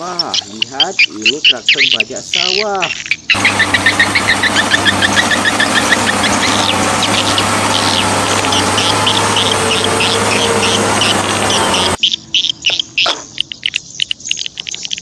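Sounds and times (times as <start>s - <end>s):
high bird chirps: 0.0s - 15.0s
low motor hum: 3.3s - 12.0s.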